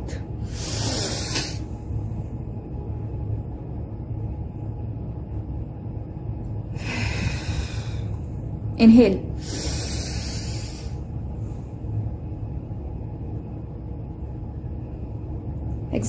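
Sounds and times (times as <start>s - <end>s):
low steady hum: 0.0s - 16.0s
person breathing in deeply: 0.1s - 1.7s, 6.8s - 8.2s, 9.4s - 11.0s.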